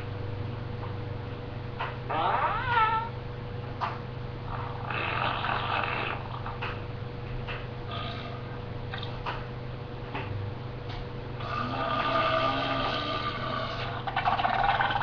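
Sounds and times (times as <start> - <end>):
low electrical hum: 0.0 - 15.0
whiny fart-like noise: 2.1 - 2.9, 4.5 - 6.6, 11.4 - 15.0
rapid fluttering fart-like noise: 4.5 - 6.8.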